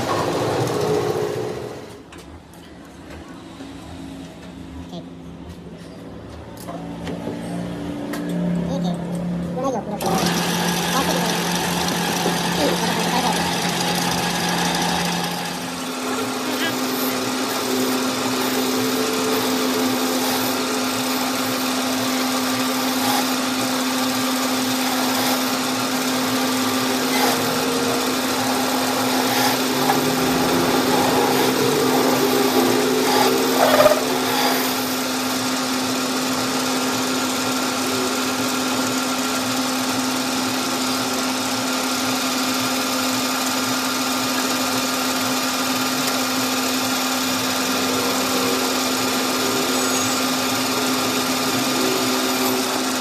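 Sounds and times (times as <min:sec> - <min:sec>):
machine tool humming: 0:10.0 - 0:53.0
scraping squealing cutting noise: 0:24.7 - 0:35.1, 0:47.8 - 0:52.9.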